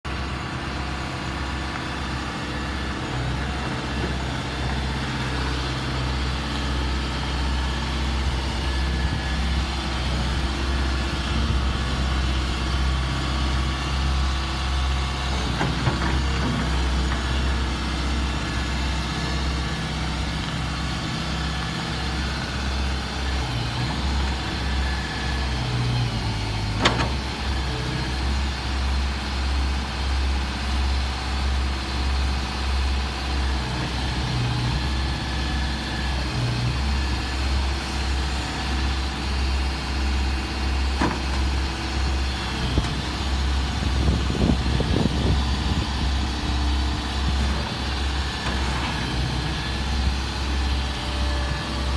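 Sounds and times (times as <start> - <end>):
diesel engine throbbing: 0.1 - 51.9.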